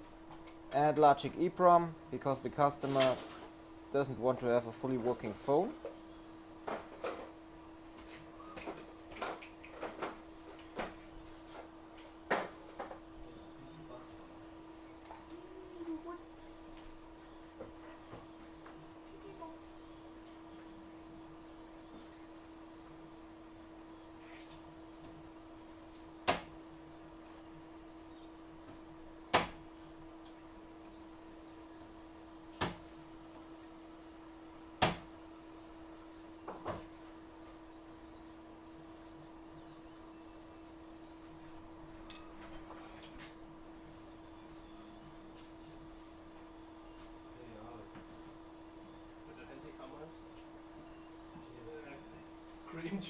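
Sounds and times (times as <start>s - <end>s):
faint high whine: 0.0s - 53.0s
steady low hum: 0.0s - 53.0s
sharp clicks: 2.6s - 11.6s, 14.2s - 41.4s.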